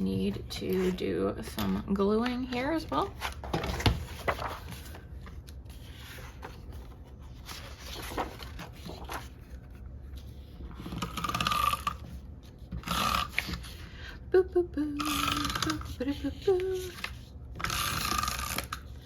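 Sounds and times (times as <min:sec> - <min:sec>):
paper pages and rings handled: 0:00.3 - 0:13.8.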